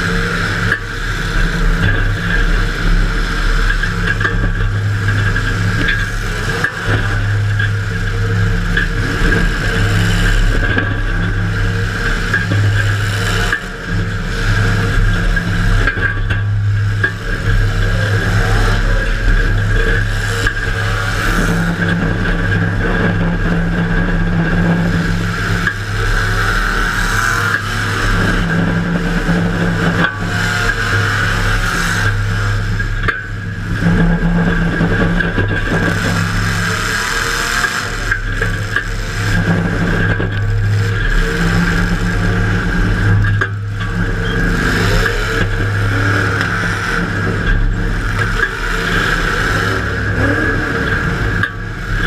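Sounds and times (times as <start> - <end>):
car engine running hard: 0.0 - 52.0.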